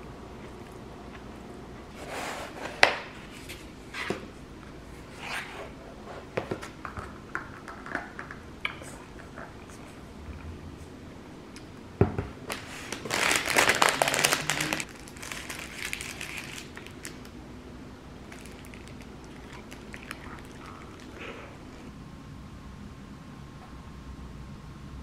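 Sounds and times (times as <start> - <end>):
packaging crinkling: 12.5 - 17.4, 18.3 - 21.3.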